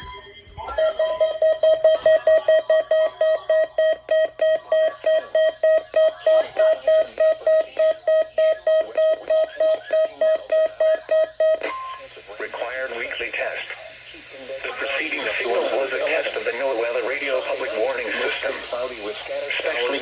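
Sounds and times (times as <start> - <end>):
radio alarm beeping: 0.0 - 13.6.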